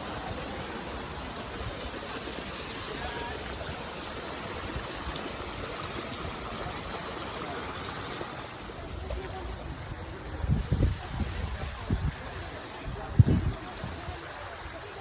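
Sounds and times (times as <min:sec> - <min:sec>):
stream waterfall rushing: 0:00.0 - 0:11.0.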